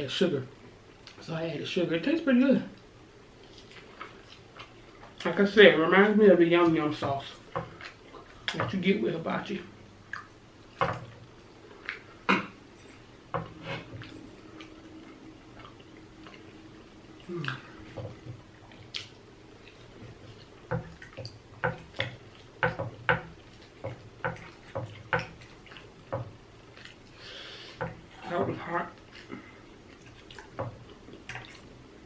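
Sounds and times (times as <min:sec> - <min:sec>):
wet chewing and lip smacking: 0:03.4 - 0:05.3, 0:14.0 - 0:22.6.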